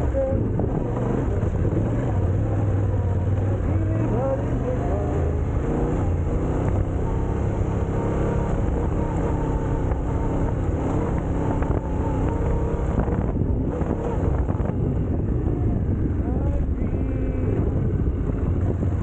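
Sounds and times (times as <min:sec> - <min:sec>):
motorcycle engine running: 0:00.0 - 0:19.0.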